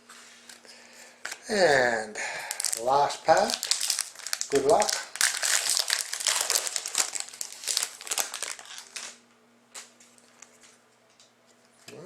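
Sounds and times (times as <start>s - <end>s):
foil wrapper crinkling: 2.3s - 9.2s.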